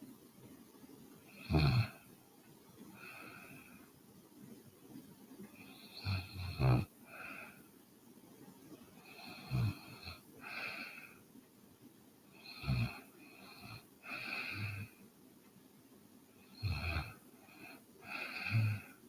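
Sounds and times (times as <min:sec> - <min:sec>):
woman snoring: 0:01.3 - 0:02.0, 0:05.6 - 0:07.5, 0:09.0 - 0:11.1, 0:12.4 - 0:14.9, 0:16.5 - 0:19.0
breathy breaths: 0:02.8 - 0:07.8, 0:08.7 - 0:11.4, 0:12.3 - 0:15.1, 0:16.4 - 0:19.0.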